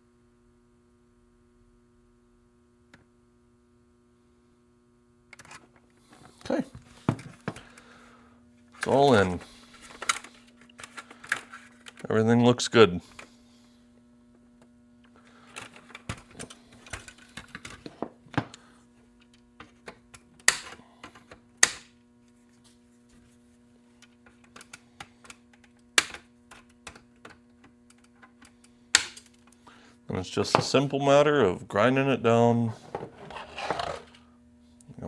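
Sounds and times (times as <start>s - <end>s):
electrical hum: 2.1s - 35.0s
plastic parts and tools clicking: 8.8s - 12.1s, 24.0s - 29.6s.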